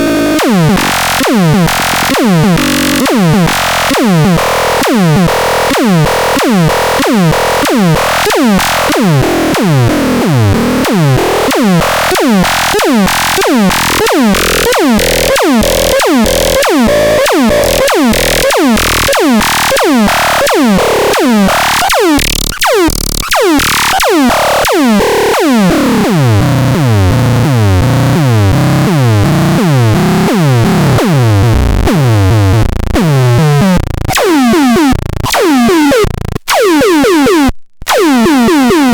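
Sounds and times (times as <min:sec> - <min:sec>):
heavy bass: 0:00.0 - 0:38.9
synthesizer music: 0:11.6 - 0:24.0.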